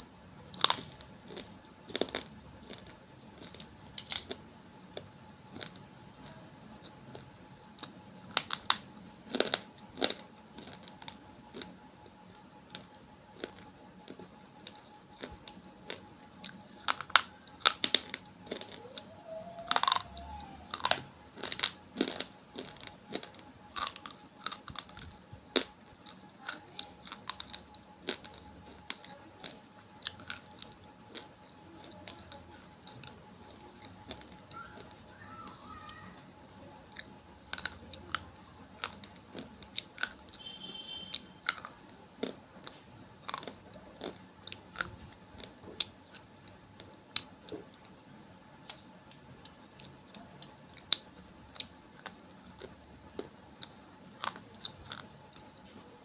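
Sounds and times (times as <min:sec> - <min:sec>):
crisp crunching and snapping: 0:00.4 - 0:36.2, 0:36.9 - 0:48.0
faint steady tone: 0:04.4 - 0:42.1.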